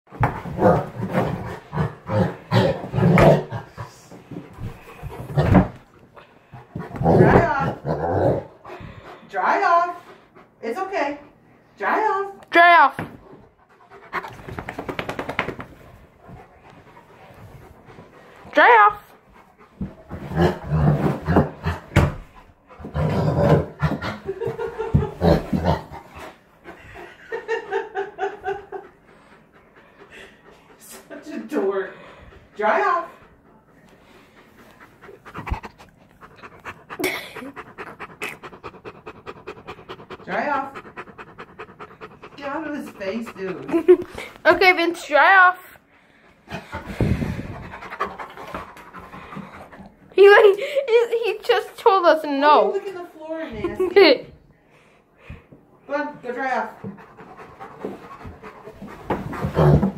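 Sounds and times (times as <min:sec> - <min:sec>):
dog panting: 0:00.1 - 0:12.0, 0:13.1 - 0:59.9
dog grumbling and moaning: 0:00.2 - 0:05.9, 0:06.6 - 0:09.3, 0:19.8 - 0:26.4, 0:35.0 - 0:44.5, 0:58.1 - 0:59.9
dog grumbling and whining: 0:00.3 - 0:04.0, 0:06.8 - 0:08.9, 0:20.1 - 0:24.3, 0:59.1 - 0:59.9.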